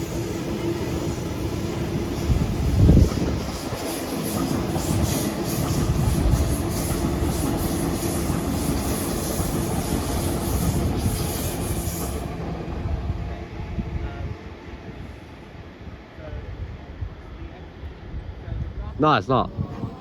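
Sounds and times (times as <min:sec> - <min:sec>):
high hiss: 0:00.0 - 0:12.7
train rumbling and humming: 0:00.0 - 0:20.0
train wheels clattering: 0:02.2 - 0:12.4.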